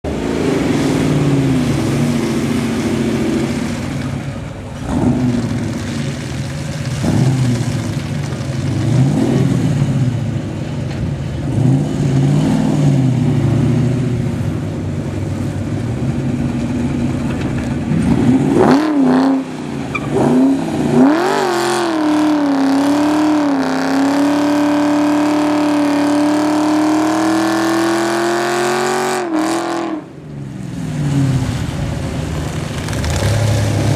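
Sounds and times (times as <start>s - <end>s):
car engine revving and accelerating: 4.8s - 10.4s, 11.4s - 14.4s, 16.4s - 30.1s, 32.5s - 33.9s.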